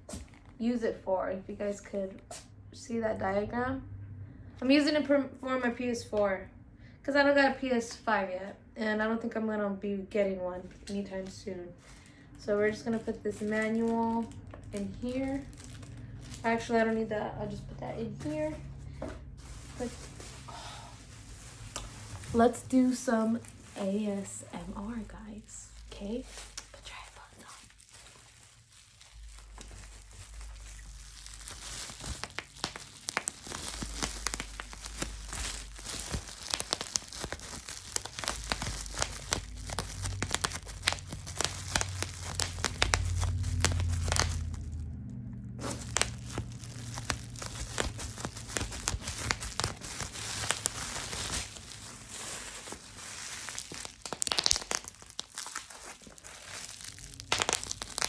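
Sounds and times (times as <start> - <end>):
plastic packaging crinkling: 10.5 - 58.0
low rumble: 13.0 - 54.0.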